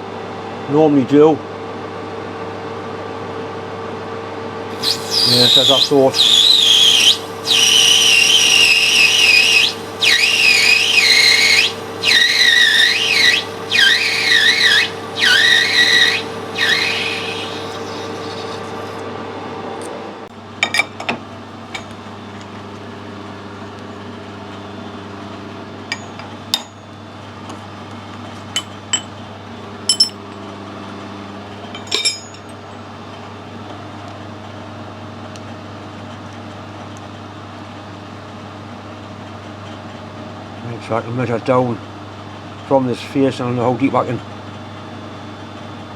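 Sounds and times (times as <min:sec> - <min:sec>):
lathe running: 0:04.7 - 0:19.0
lathe tool squealing with chatter: 0:04.7 - 0:19.0.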